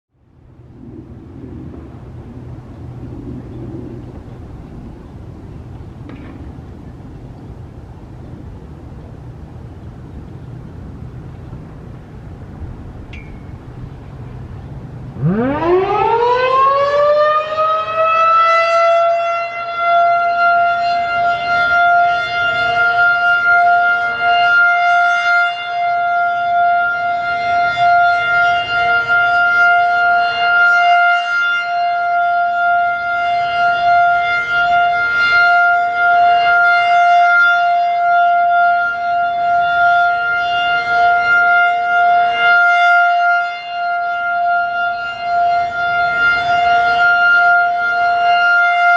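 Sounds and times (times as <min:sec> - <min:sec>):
distant siren steady tone: 0:00.1 - 0:48.9
warning siren winding up: 0:15.2 - 0:48.9.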